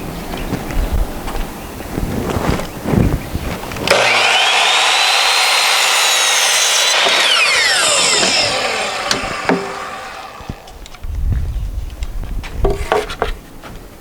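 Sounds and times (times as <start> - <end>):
chop saw whining and cutting: 3.8 - 10.9.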